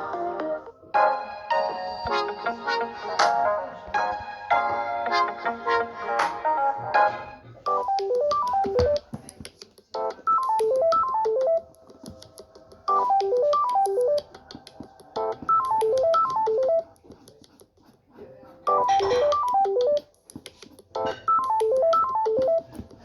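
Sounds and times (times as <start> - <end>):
phone ringtone melody: 7.7 - 9.0, 10.2 - 11.7, 12.9 - 14.3, 15.2 - 16.8, 18.7 - 20.1, 21.1 - 22.7.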